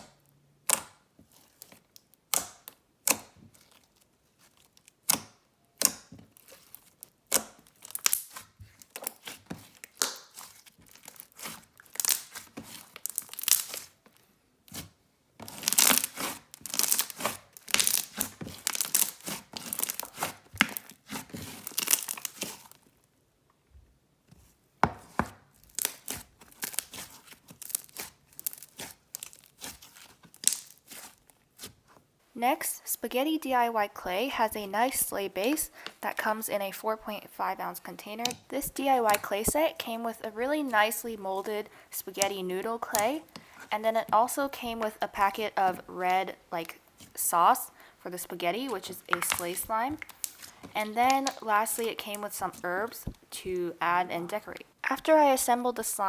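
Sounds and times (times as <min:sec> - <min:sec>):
slime squishing sticky clicks: 0:07.3 - 0:14.0, 0:48.7 - 0:52.5.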